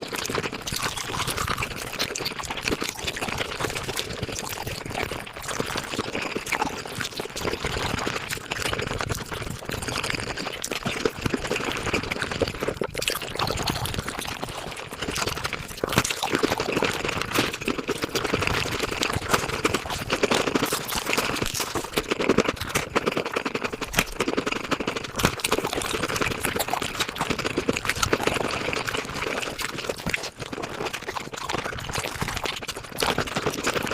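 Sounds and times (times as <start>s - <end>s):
sped-up chewing and slurping: 0.0s - 33.9s.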